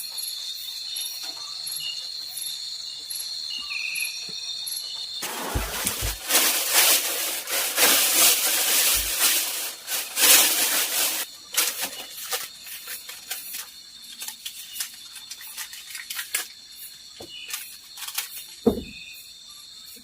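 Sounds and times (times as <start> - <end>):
insect chirring: 0.0 - 20.0
rustling and scraping: 5.2 - 16.6, 17.3 - 19.1.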